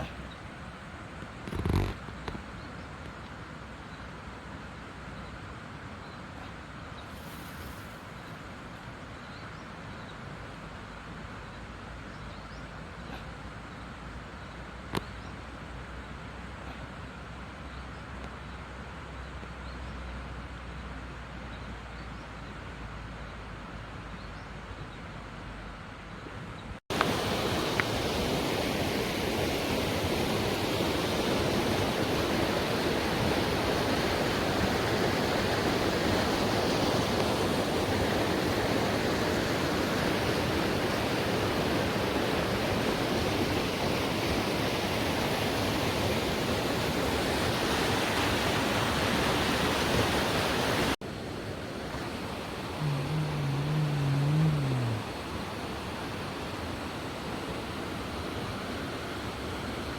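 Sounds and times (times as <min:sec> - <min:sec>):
rushing flowing water: 0:26.9 - 0:59.9
low hum: 0:52.7 - 0:55.2.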